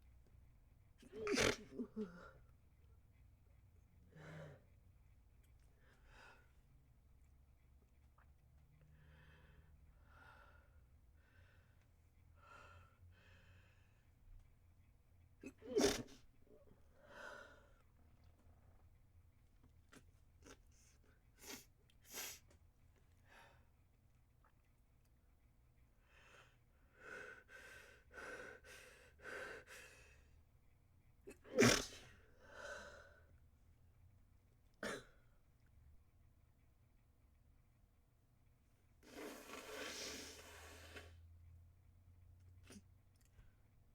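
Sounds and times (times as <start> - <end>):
person stifled sneeze: 1.0 - 2.3, 15.4 - 16.2, 31.3 - 32.2
breathy in-breaths: 4.1 - 4.7
breath out: 39.0 - 41.2.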